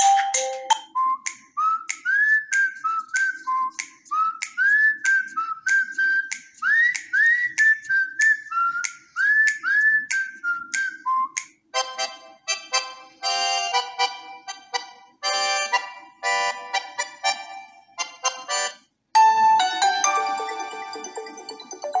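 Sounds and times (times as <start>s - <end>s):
whistled ringtone melody: 0.0s - 11.0s.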